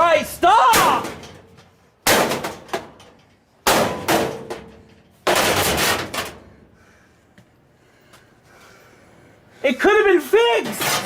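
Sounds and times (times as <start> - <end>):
metal clanging blows and crashes: 0.7 - 6.4.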